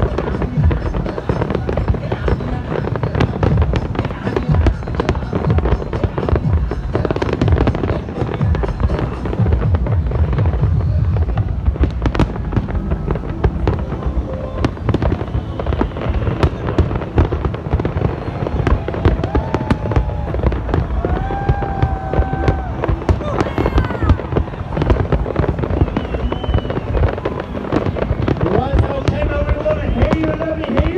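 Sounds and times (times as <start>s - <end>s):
fireworks bangs and crackles: 0.0s - 30.9s.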